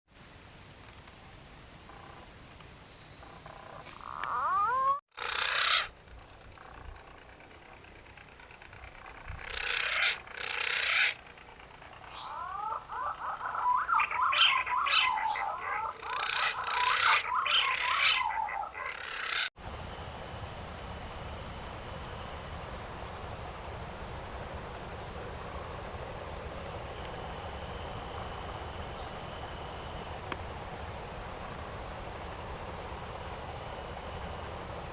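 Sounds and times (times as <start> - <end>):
insect trilling: 3.0 - 19.5
birds warbling whistles: 9.4 - 11.2, 12.0 - 19.5.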